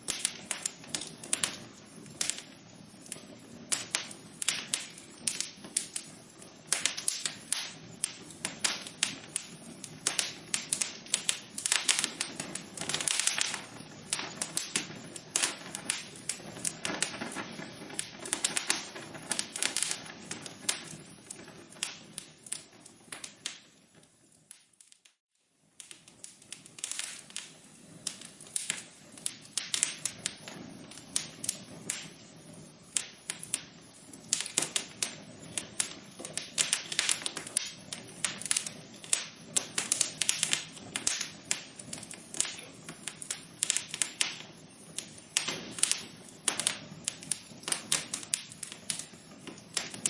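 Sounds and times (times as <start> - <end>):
wood fire crackling and popping: 0.0 - 50.0.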